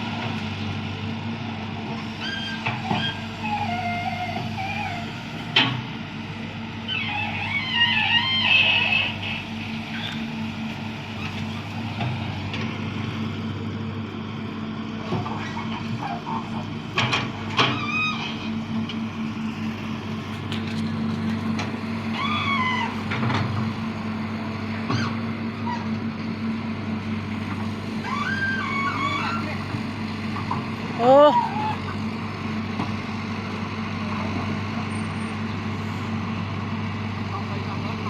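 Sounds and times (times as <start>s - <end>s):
excavator diesel engine running: 0.0s - 38.0s
people shouting: 30.9s - 31.9s.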